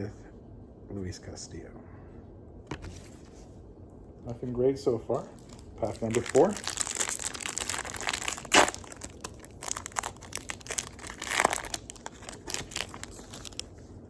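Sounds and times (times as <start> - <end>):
foil wrapper tearing and crinkling: 5.4 - 13.7.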